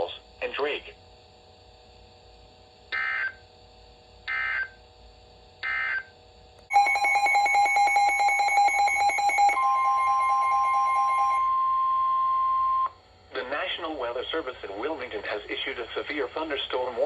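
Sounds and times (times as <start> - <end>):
rapidly pulsing alarm tone: 2.9 - 3.4, 4.2 - 4.8, 5.6 - 6.1, 6.7 - 13.0.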